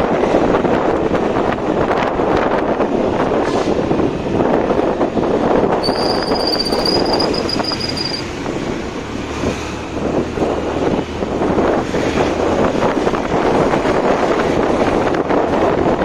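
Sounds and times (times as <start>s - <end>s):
motorcycle road noise: 0.0s - 16.0s
wind rushing over microphone: 0.0s - 16.0s
high whistle-like squeal: 5.8s - 8.3s.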